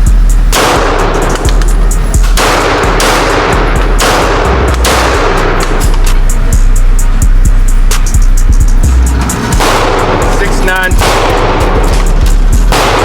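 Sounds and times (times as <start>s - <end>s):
background music: 0.0s - 13.0s
handgun shots with echo: 0.5s - 6.2s, 9.6s - 13.0s.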